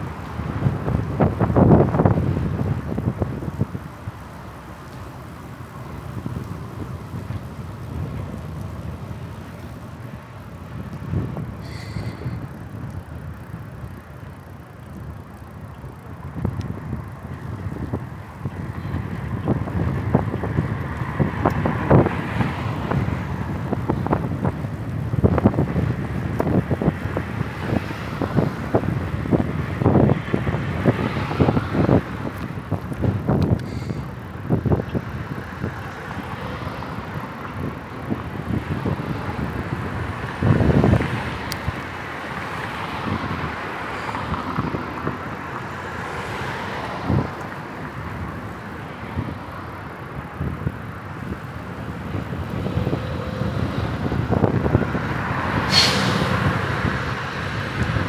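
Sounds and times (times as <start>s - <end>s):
bicycle rolling noise: 0.0s - 58.0s
wind buffeting microphone: 0.0s - 58.0s.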